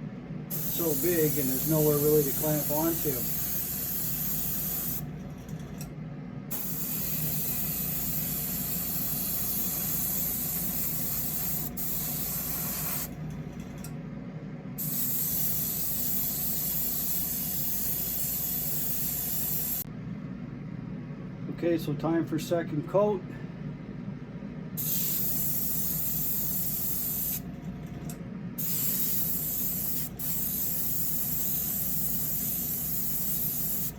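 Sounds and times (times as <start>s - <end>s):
steady low hum: 0.0s - 33.9s
airbrush spraying hiss: 0.5s - 5.0s, 6.5s - 13.1s, 14.8s - 19.9s, 24.8s - 27.4s, 28.6s - 33.9s.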